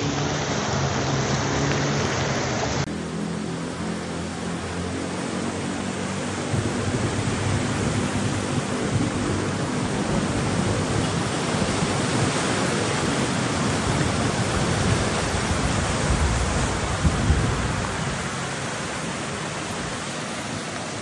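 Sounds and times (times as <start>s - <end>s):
heavy rain pouring: 0.0s - 21.0s
low thunder rumble: 6.5s - 18.6s.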